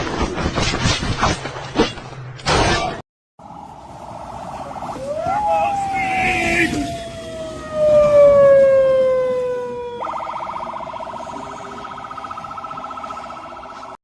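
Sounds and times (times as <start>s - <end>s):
rapid siren warble: 3.4s - 14.0s
siren-like falling tone: 3.4s - 14.0s.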